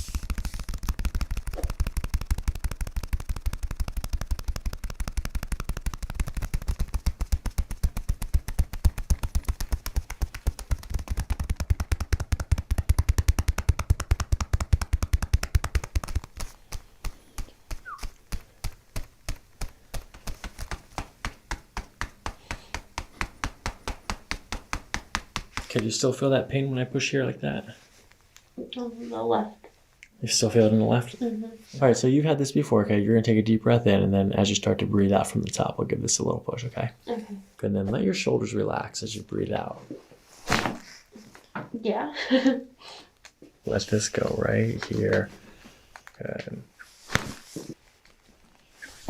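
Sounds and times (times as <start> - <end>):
percussive tapping on a body: 0.0 - 25.9.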